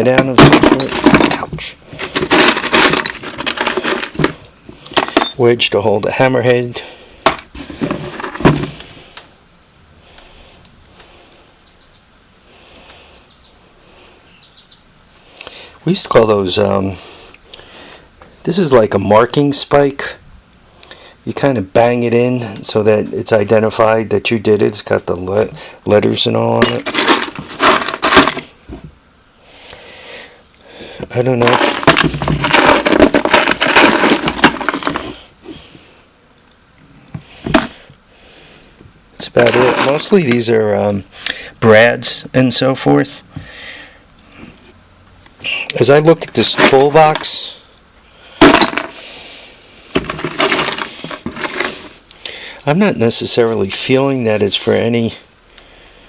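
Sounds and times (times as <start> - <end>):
metal hardware clinking and rattling: 0.0 - 5.5, 7.2 - 8.8, 26.6 - 28.5, 31.4 - 35.2, 39.2 - 40.4, 46.2 - 47.4, 48.4 - 49.0, 49.9 - 51.9.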